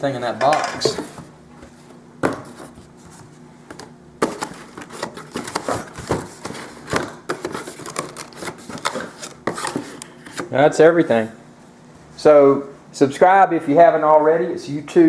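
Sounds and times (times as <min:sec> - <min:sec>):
rummaging through cardboard box: 0:04.2 - 0:10.4.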